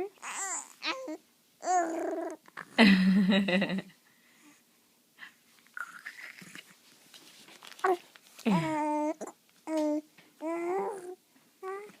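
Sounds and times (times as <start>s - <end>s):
baby cooing: 0.0s - 2.8s, 7.8s - 12.0s.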